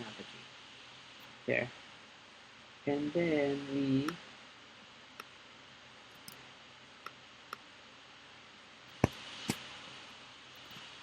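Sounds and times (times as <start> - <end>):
computer mouse clicks: 6.1 - 6.4
keyboard clicks: 6.2 - 6.4.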